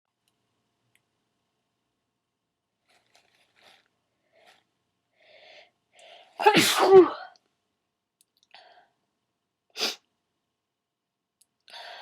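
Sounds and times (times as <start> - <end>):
breathy gasps before a sneeze: 6.4 - 7.3.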